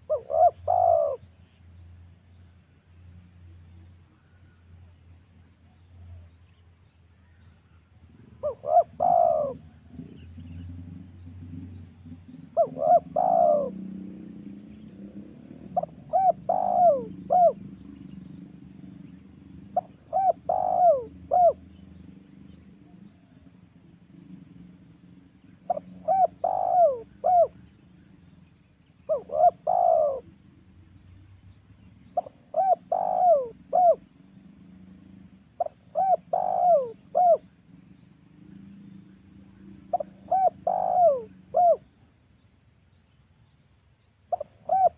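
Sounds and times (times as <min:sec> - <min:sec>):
dove cooing: 0:00.0 - 0:01.3, 0:08.2 - 0:18.9, 0:19.7 - 0:22.0, 0:25.6 - 0:28.2, 0:29.0 - 0:30.4, 0:32.1 - 0:34.2, 0:35.6 - 0:42.0, 0:44.3 - 0:44.9.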